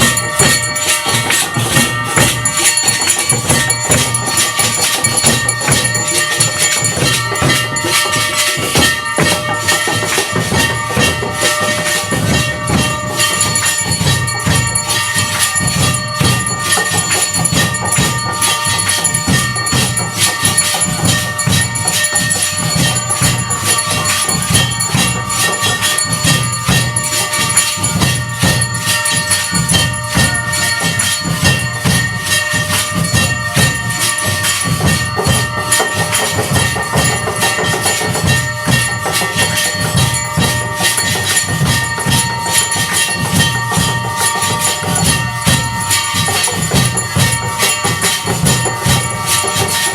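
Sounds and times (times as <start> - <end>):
bells and metal percussion clanging: 0.0 - 49.9
steady low drumbeat: 0.0 - 49.9.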